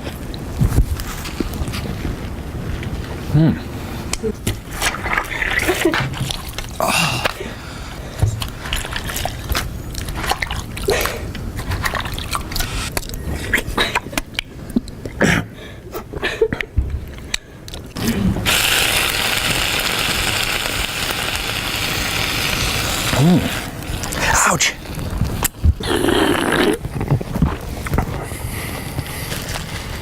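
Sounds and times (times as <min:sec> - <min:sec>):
wet mouth eating noises: 0:03.6 - 0:19.5, 0:22.3 - 0:30.0
steady hiss: 0:18.0 - 0:26.9, 0:27.6 - 0:30.0.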